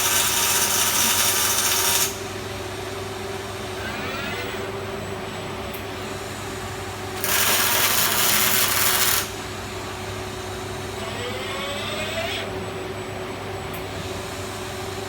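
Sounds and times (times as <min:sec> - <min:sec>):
welding arc hissing: 0:00.0 - 0:02.3, 0:07.0 - 0:09.7
welding cell hum: 0:00.0 - 0:04.4, 0:05.4 - 0:11.9.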